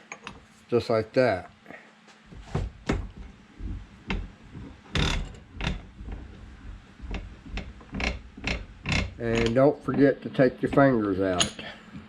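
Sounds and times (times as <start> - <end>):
metal clicks and clanks in a vise: 4.9 - 11.7.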